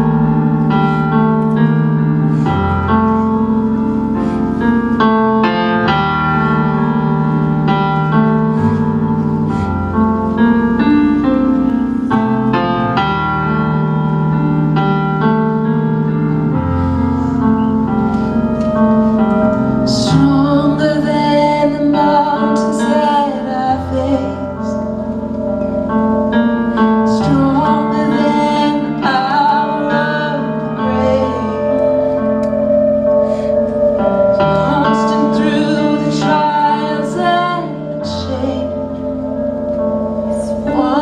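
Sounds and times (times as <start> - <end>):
sustained instrumental chords: 0.0 - 41.0
worship singing: 27.1 - 41.0.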